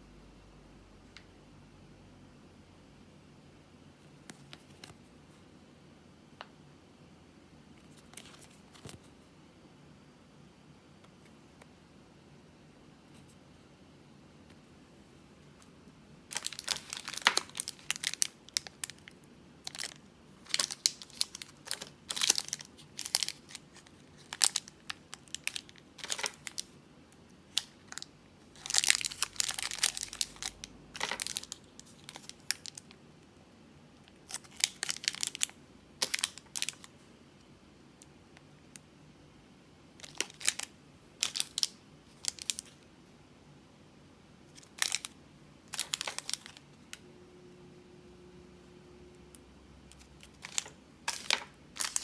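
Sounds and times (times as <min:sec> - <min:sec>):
wrapper crinkling and tearing: 0:16.3 - 0:26.8, 0:27.5 - 0:33.0, 0:34.2 - 0:36.9, 0:40.0 - 0:42.8, 0:44.5 - 0:45.1, 0:45.7 - 0:46.6, 0:49.9 - 0:52.0.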